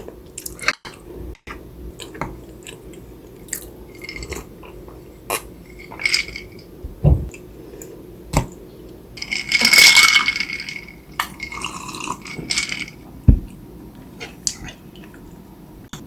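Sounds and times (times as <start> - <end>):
utensils clinking on dishes: 3.9 - 6.7, 9.2 - 13.0.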